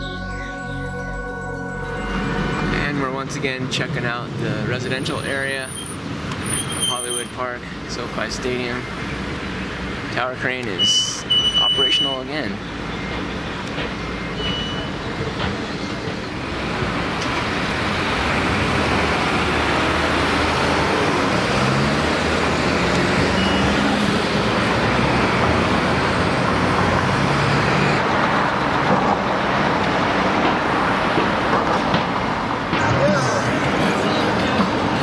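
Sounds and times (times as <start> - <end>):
low engine drone: 0.0 - 4.7
passing vehicles tyres and engines: 12.5 - 35.0.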